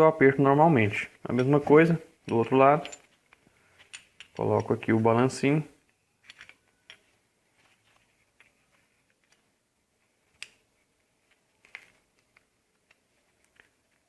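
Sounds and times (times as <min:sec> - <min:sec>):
small metal clicks and taps: 0:02.3 - 0:04.8.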